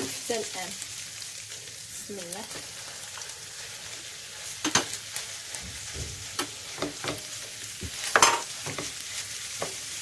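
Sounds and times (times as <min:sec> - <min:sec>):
meat sizzling in a pan: 0:00.0 - 0:10.0
spoon scraping a pan: 0:02.5 - 0:09.9.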